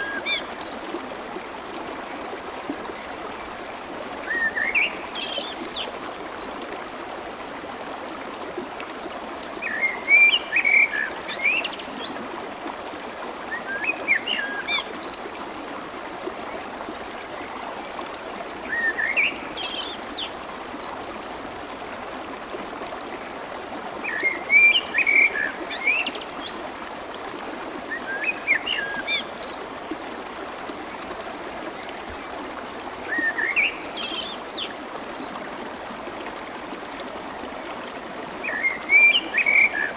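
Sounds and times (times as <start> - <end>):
stream water babbling: 0.0 - 39.9.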